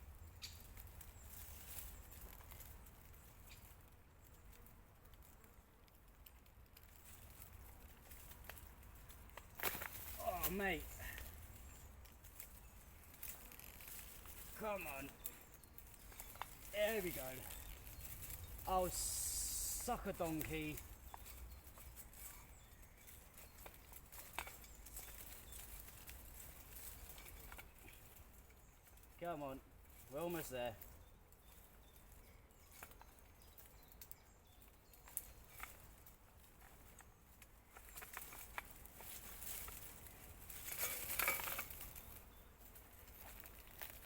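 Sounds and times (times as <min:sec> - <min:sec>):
brush and leaves rustling: 0:00.0 - 0:44.0
twigs snapping: 0:05.8 - 0:29.1, 0:32.7 - 0:44.0.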